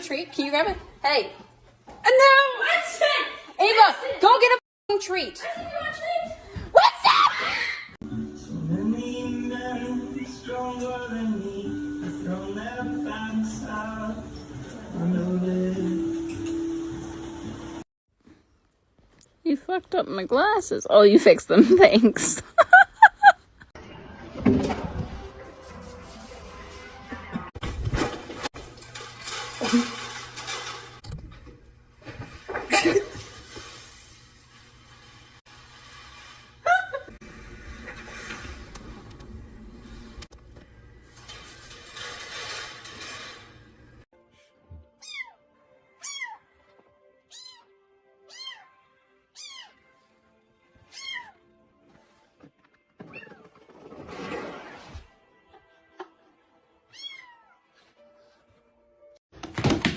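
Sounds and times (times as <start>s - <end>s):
dishes clattering: 27.2s - 33.9s
faint background music: 44.1s - 59.2s
cat meowing: 47.3s - 47.7s, 48.3s - 48.7s, 49.4s - 49.8s, 50.9s - 51.4s, 56.9s - 57.6s.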